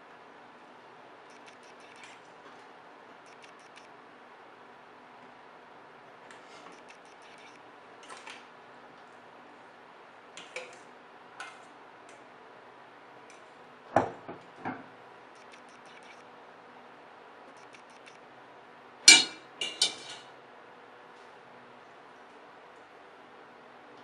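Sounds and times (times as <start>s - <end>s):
low background hum: 0.0s - 24.0s
utensils clicking on cookware: 19.1s - 20.3s.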